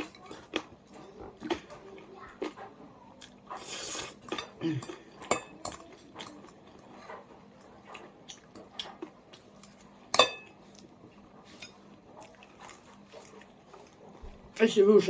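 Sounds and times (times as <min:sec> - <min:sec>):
cutlery clinking against dishes: 0:04.0 - 0:06.6, 0:10.1 - 0:10.6.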